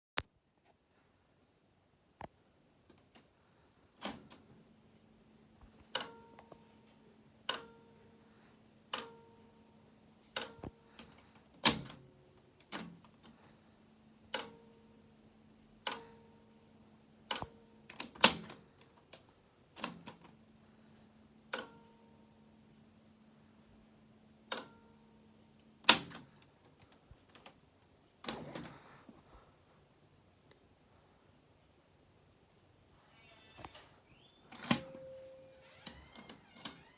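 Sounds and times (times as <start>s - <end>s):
faint steady hum: 0.3s - 36.9s
cassette mechanism click with ringing: 5.9s - 6.5s, 7.4s - 7.8s, 8.9s - 9.3s, 11.6s - 13.0s, 21.5s - 21.9s, 24.5s - 24.9s, 34.6s - 36.8s.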